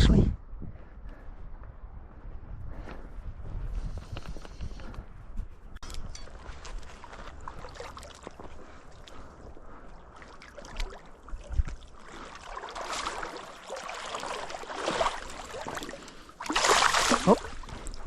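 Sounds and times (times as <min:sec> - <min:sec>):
river water splashing: 0:06.7 - 0:18.0.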